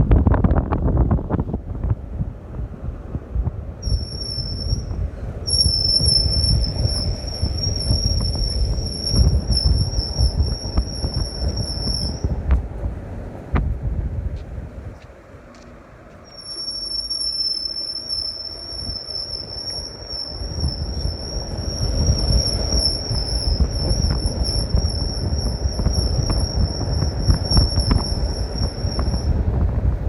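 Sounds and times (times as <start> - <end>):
vehicle low rumble: 0.0 - 30.0
high-pitched squeal: 3.8 - 12.3, 16.3 - 29.5.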